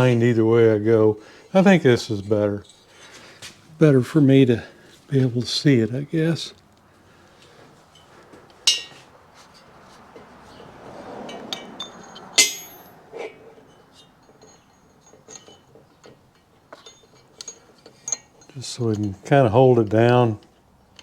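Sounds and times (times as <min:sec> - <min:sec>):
soft metal scraping: 0:01.4 - 0:03.7, 0:07.4 - 0:16.2
sharp metal clanks: 0:08.0 - 0:09.1, 0:11.3 - 0:15.8
metal parts clinking and knocking: 0:08.7 - 0:09.0, 0:11.3 - 0:19.3.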